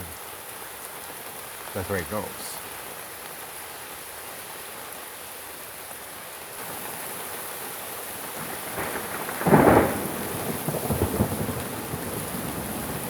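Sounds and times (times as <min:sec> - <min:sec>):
steady rain falling: 0:00.0 - 0:13.0
thunder clap rumbling: 0:08.1 - 0:13.0.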